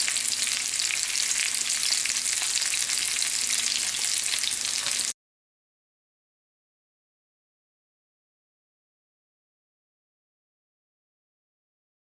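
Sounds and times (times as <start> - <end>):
meat sizzling in oil: 0.0 - 5.2.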